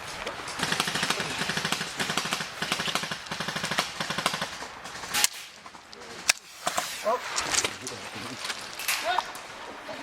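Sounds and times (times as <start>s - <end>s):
airsoft rifle firing bursts: 0.6s - 5.3s
loud sharp noise: 6.3s - 7.8s.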